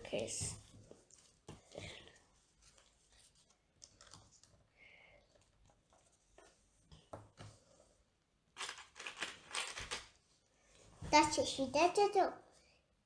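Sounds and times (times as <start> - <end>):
plastic bricks clicking together: 8.6 - 10.1.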